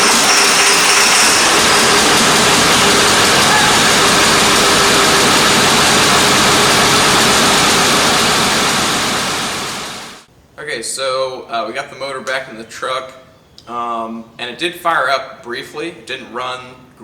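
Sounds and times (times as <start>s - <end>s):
diesel engine running loud: 0.0s - 10.2s.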